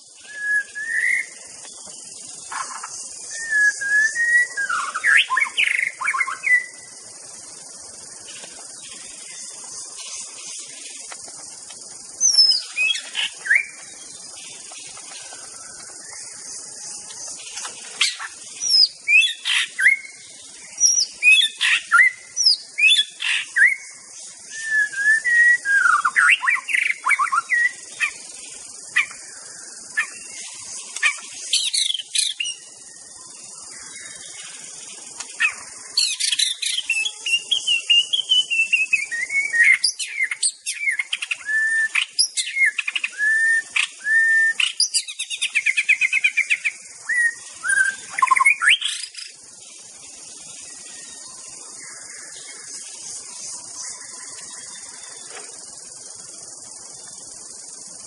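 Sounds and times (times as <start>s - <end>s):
steady high hiss: 0.0s - 58.0s
songbird whistling and chattering: 0.2s - 1.4s, 2.5s - 6.8s, 12.2s - 13.8s, 17.6s - 20.2s, 20.8s - 23.8s, 24.5s - 28.2s, 35.4s - 49.4s.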